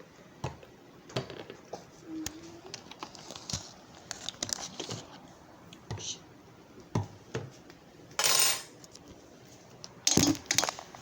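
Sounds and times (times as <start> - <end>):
objects being handled: 0.4 - 5.4.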